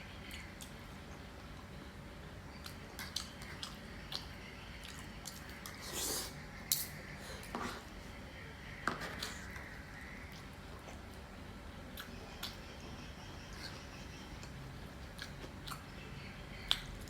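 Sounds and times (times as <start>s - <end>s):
chewing and mouth sounds: 2.6s - 7.5s, 11.9s - 12.6s, 14.4s - 16.0s, 16.6s - 17.0s.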